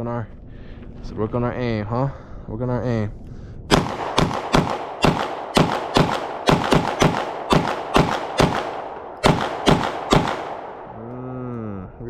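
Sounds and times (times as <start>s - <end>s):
pistol shots: 3.7s - 11.1s.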